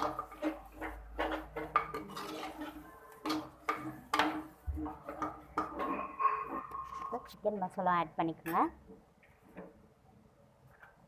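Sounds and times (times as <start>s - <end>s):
spoon knocking and scraping pot: 0.0s - 7.3s.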